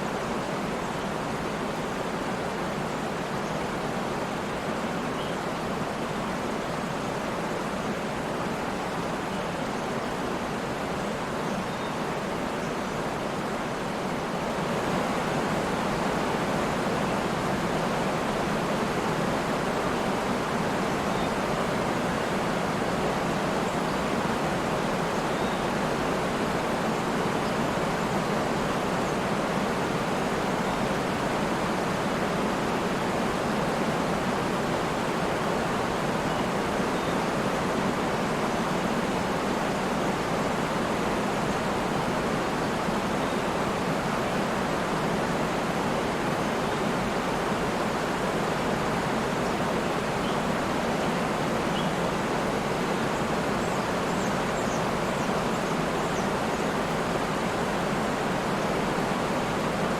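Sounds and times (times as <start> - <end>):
waterfall rushing: 12.0 - 59.9.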